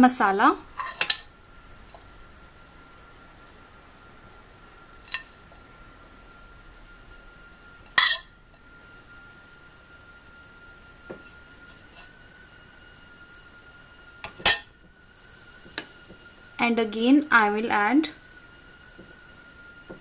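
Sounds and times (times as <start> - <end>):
spoon clinking against dishes: 7.9 - 8.3, 14.3 - 14.8.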